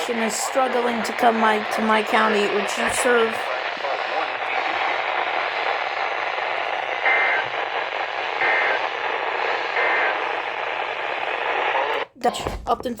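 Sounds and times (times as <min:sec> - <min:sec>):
radio static hiss: 0:00.0 - 0:12.2
alert data tone bursts: 0:08.3 - 0:08.8.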